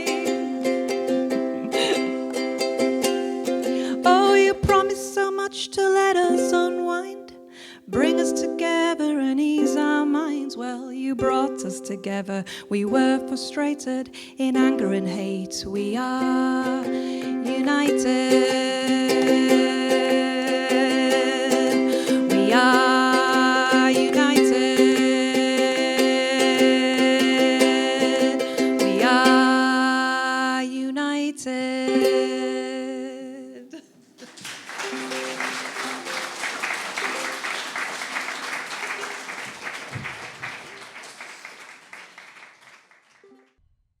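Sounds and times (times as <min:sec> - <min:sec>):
looped vocal harmony with singing: 0:15.2 - 0:34.0
audience applause: 0:34.2 - 0:43.3.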